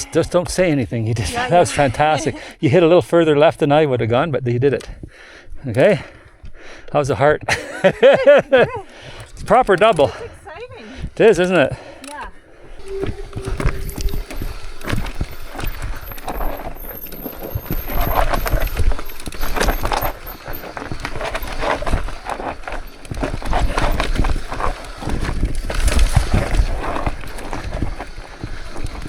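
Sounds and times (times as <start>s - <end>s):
mountain bike rattling over rocks: 7.2s - 29.0s.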